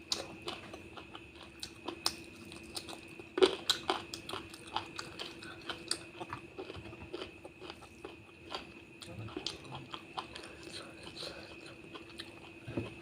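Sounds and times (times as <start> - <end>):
faint steady hum: 0.0 - 13.0
close chewing and biting: 0.1 - 13.0.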